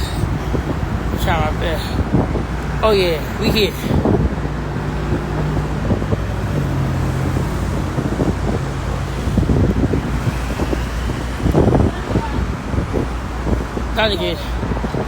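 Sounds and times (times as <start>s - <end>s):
road traffic: 0.0s - 15.0s
wind rumbling on microphone: 0.0s - 15.0s.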